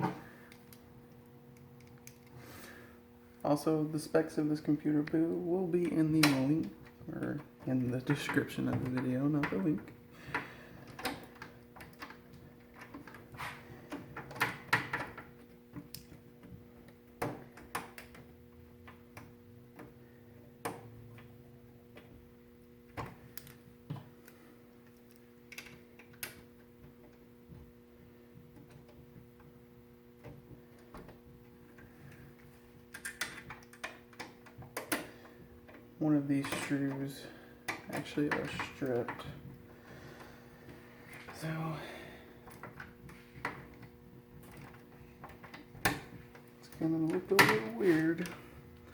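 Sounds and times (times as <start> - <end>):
steady low hum: 0.0 - 48.9.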